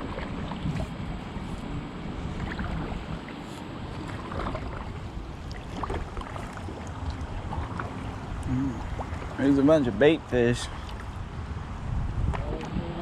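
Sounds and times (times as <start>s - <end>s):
water moving around kayak: 0.0s - 13.0s
wind rumbling on microphone: 0.0s - 13.0s
small splashes and drips: 2.4s - 9.5s, 10.6s - 11.2s.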